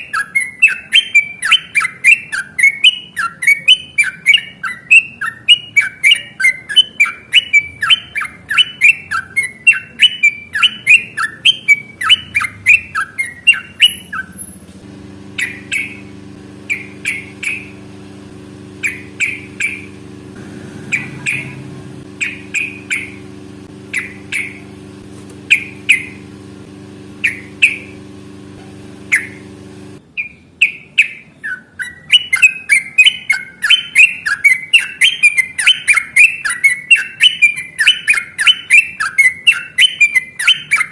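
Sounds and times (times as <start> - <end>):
bird singing: 0.0 - 14.6, 15.3 - 18.0, 18.6 - 20.1, 20.8 - 24.9, 25.5 - 26.3, 27.2 - 40.9
low steady hum: 14.8 - 30.0.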